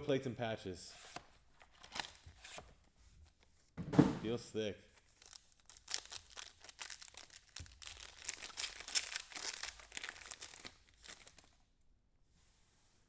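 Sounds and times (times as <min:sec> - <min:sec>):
wrapper crinkling and tearing: 0:05.0 - 0:11.6.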